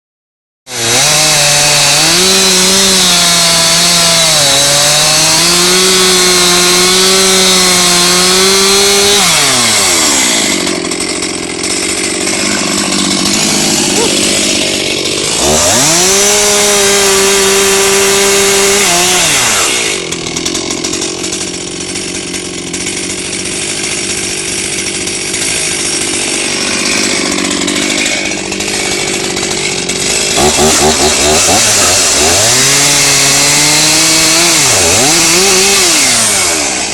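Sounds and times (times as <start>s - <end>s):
chainsaw engine revving: 0.7s - 36.9s.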